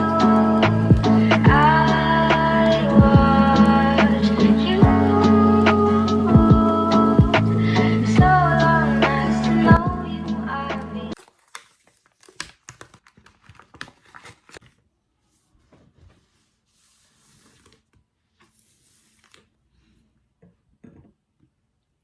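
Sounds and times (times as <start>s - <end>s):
background music: 0.0s - 11.2s.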